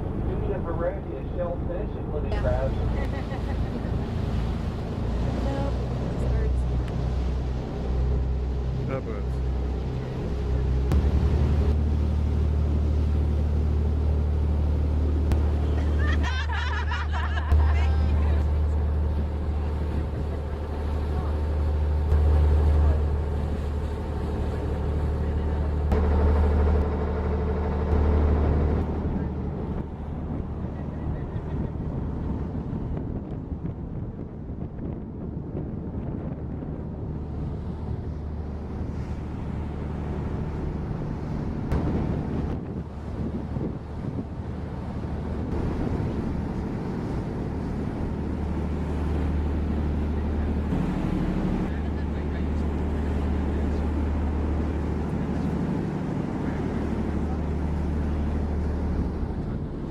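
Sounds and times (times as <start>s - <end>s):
boat engine droning: 0.0s - 59.9s
wind buffeting microphone: 0.0s - 59.9s
faint voices: 50.0s - 59.9s.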